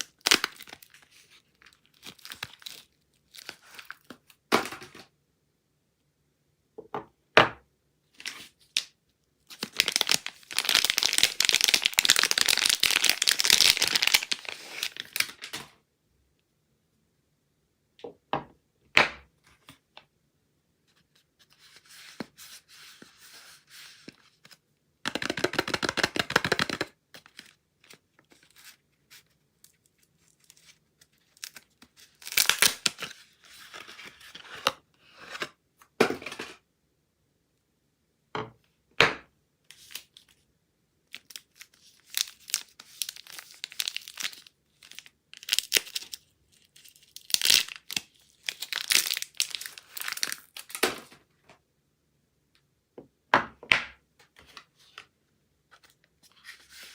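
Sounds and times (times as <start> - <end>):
packaging tearing and crinkling: 0.0 - 4.1, 9.5 - 15.6, 29.8 - 34.2, 41.1 - 51.1.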